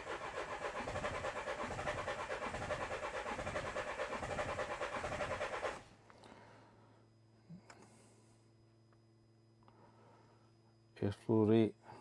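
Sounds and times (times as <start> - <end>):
faint low hum: 5.8 - 12.0.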